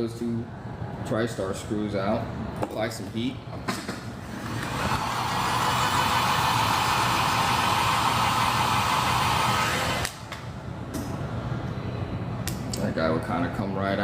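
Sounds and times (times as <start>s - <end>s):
hot air gun blowing: 4.3s - 10.2s.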